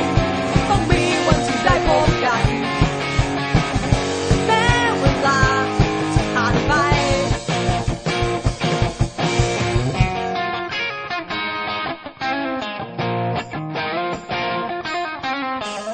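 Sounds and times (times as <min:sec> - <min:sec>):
steady drum beat: 0:00.0 - 0:10.4
rock song with sung vocals: 0:00.0 - 0:10.7
electric guitars: 0:00.0 - 0:15.9.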